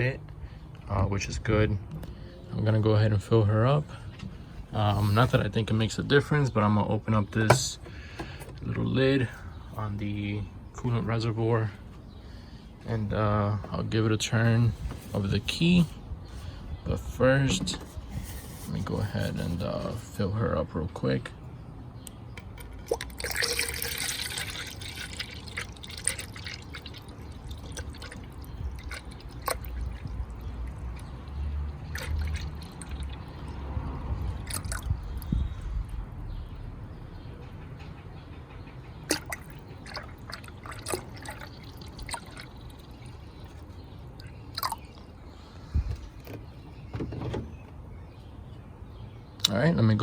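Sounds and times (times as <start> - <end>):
coolant trickling into funnel: 22.5 - 35.6, 39.1 - 45.2.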